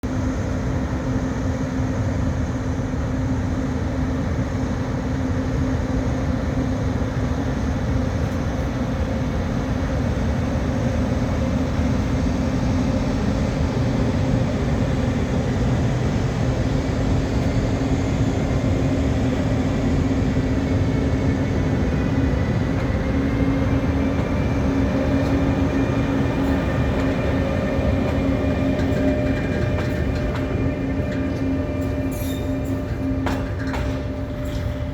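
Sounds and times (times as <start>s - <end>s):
locomotive low drone: 0.0s - 34.9s
faint high whining tones: 18.9s - 34.9s.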